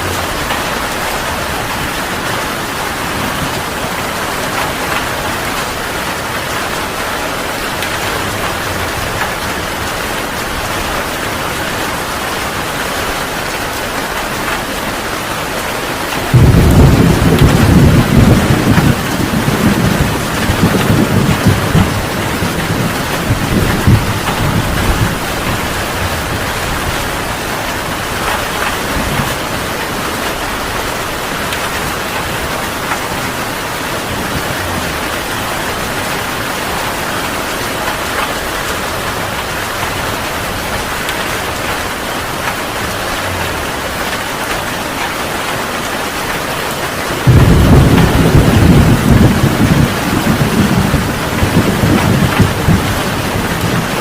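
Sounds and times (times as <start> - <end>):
heavy rain pouring: 0.0 - 54.0
thunder rumbling: 14.2 - 46.2, 47.1 - 54.0.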